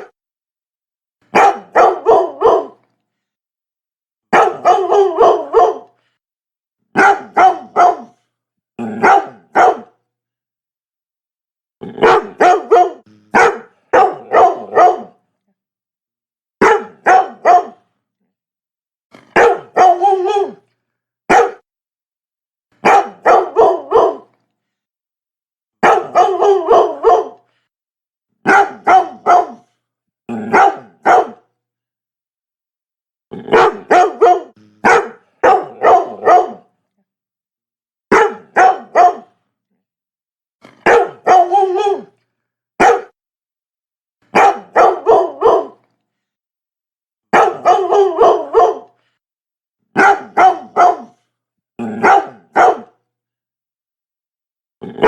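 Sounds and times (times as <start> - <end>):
dog barking: 1.3 - 2.8, 4.3 - 6.0, 7.0 - 8.2, 8.8 - 10.0, 11.9 - 15.2, 16.6 - 17.9, 19.2 - 20.6, 21.3 - 21.7, 22.8 - 24.3, 25.8 - 27.5, 28.4 - 29.7, 30.4 - 31.5, 33.5 - 36.7, 38.1 - 39.4, 40.7 - 42.1, 42.8 - 43.2, 44.3 - 45.8, 47.3 - 49.0, 49.9 - 53.0.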